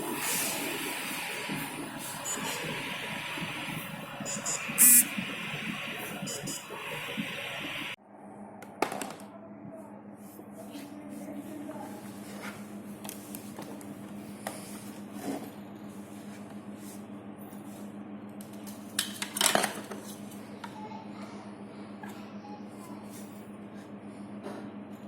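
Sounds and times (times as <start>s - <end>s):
steady low hum: 0.0s - 18.9s.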